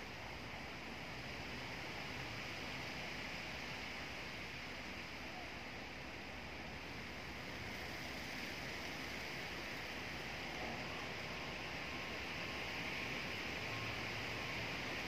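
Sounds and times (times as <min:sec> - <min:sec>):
wind rustling tree leaves: 0:00.0 - 0:15.0.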